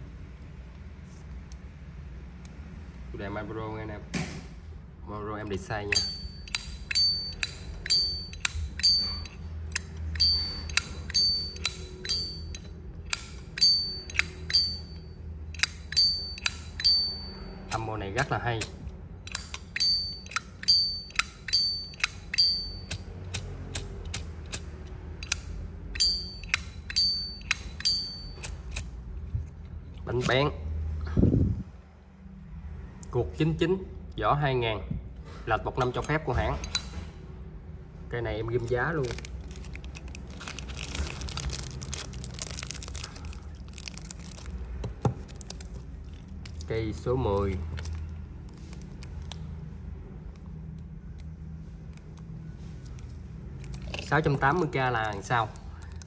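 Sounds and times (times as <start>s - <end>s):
metal lighters clicking and rustling: 5.9s - 17.1s, 17.7s - 30.3s.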